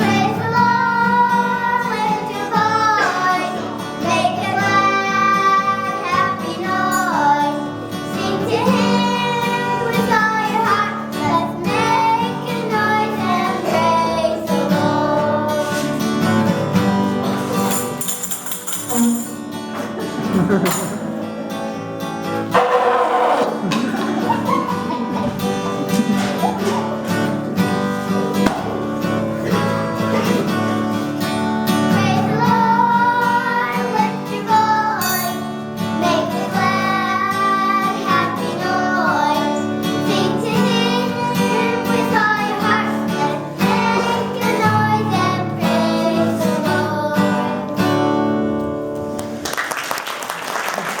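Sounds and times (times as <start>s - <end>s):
children singing: 0.0s - 16.6s, 22.5s - 31.1s, 31.7s - 48.0s
acoustic guitar: 0.0s - 49.6s
applause: 49.1s - 51.0s.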